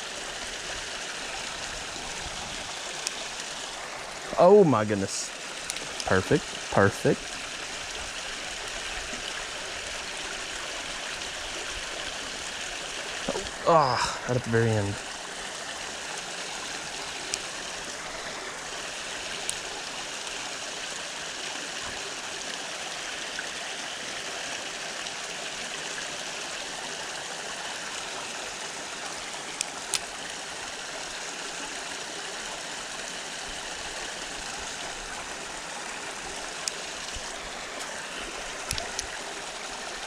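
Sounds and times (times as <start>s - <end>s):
creek water running: 0.0s - 40.0s.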